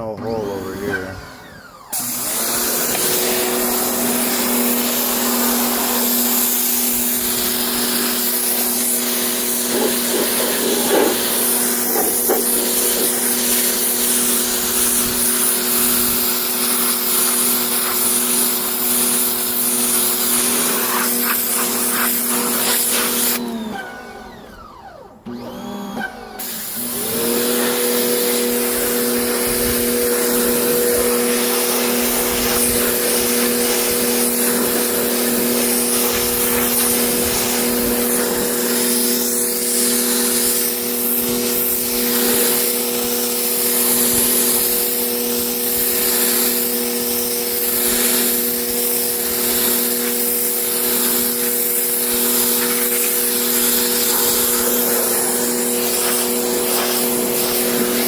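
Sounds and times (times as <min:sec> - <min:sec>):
carpet cleaner motor running: 0:00.0 - 0:58.0.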